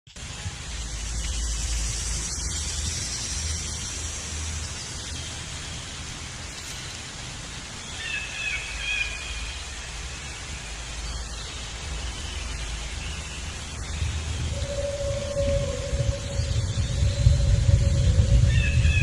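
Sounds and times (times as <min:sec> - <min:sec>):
steady high hiss: 0:00.1 - 0:19.0
low rumble: 0:12.6 - 0:19.0
bird wavering call: 0:14.4 - 0:19.0.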